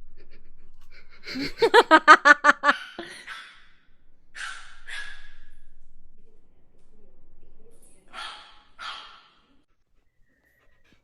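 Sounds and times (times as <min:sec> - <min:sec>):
person laughing: 0:00.0 - 0:03.3.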